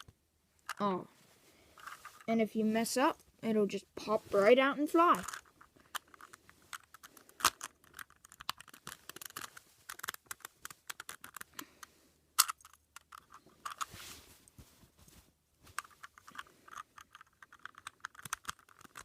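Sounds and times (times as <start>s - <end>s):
plastic puzzle cube clicking: 5.2s - 11.7s, 12.4s - 13.9s, 15.8s - 19.0s
sharp plastic snaps: 5.2s - 13.8s, 15.8s - 19.0s.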